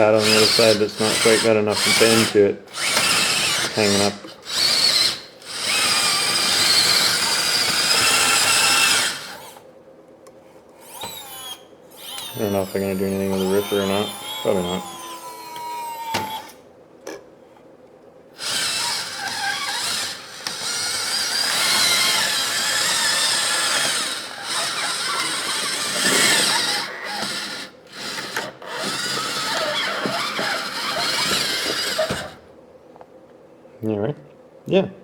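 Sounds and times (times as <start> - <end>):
model bulldozer motors whirring: 0.2 - 9.6, 18.4 - 32.4.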